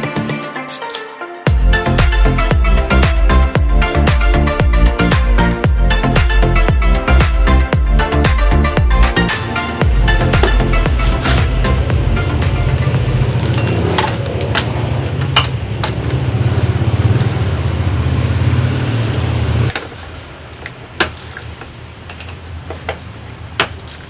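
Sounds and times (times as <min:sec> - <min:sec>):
scroll saw rattling: 0:09.3 - 0:12.2.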